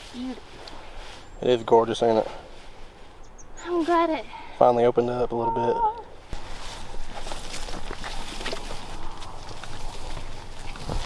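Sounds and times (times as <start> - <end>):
footsteps on forest trail: 6.2 - 11.0.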